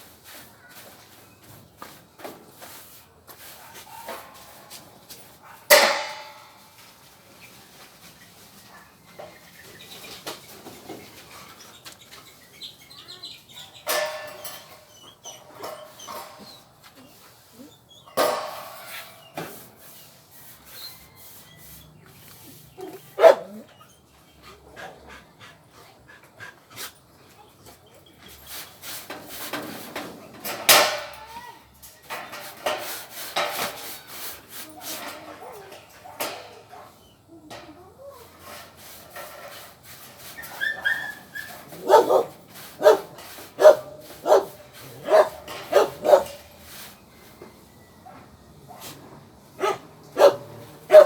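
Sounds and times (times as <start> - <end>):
dog barking: 3.6 - 4.4, 5.4 - 5.8, 23.0 - 23.7, 40.9 - 46.4, 49.6 - 51.0.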